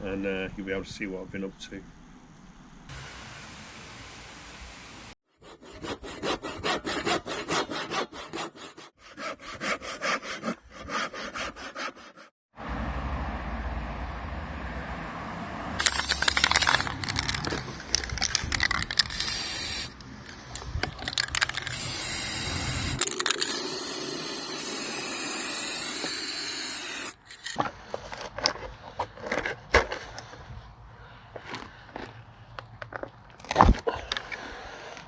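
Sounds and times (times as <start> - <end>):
power tools scraping wood and metal: 5.4 - 12.3, 15.8 - 30.5.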